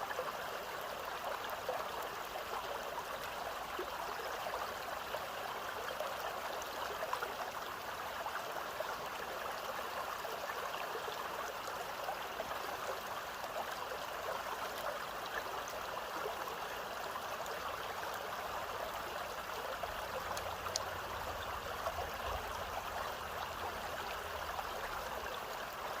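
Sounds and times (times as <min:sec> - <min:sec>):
stream water splashing: 0:09.8 - 0:26.0.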